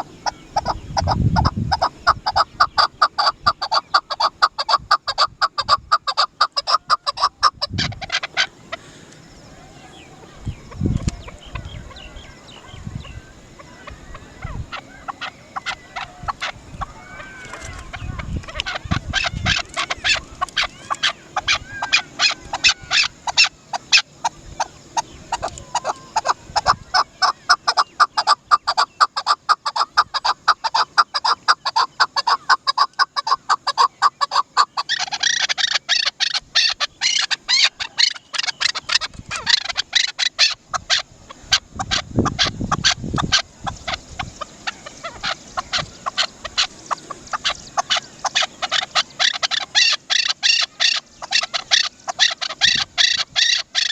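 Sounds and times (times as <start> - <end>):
partridge calling: 0.0 - 53.9.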